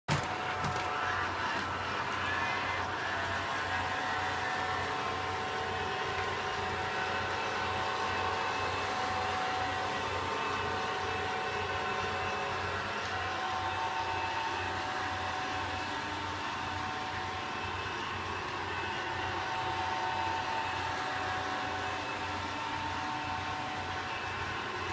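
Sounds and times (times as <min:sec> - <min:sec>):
robot vacuum cleaner whirring: 0:00.1 - 0:24.9.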